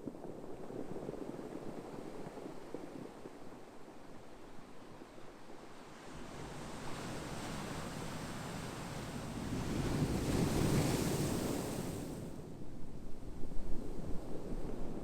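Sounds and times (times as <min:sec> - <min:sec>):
ocean waves on shore: 0:06.0 - 0:12.5.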